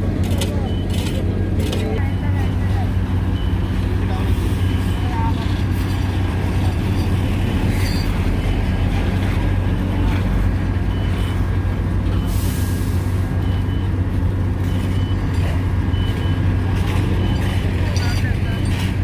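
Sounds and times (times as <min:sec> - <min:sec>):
diesel engine running: 0:00.0 - 0:19.0
backup alarm beeping: 0:00.2 - 0:05.4, 0:10.8 - 0:12.6, 0:13.3 - 0:18.8.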